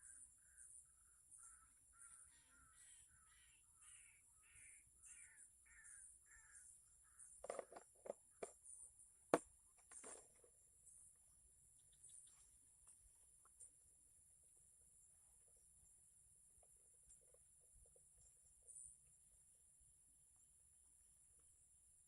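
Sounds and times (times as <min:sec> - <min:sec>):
faint bird calls: 0:00.0 - 0:09.1.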